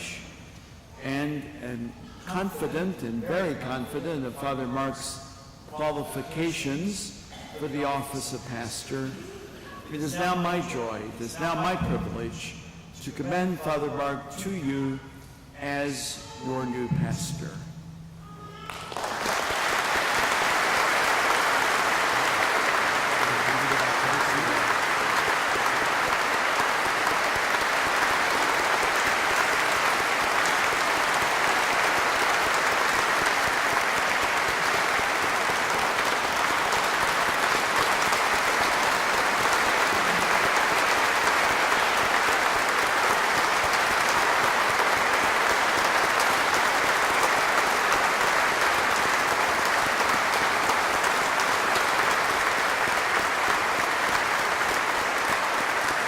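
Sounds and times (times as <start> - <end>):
congregation applauding: 18.6 - 56.0.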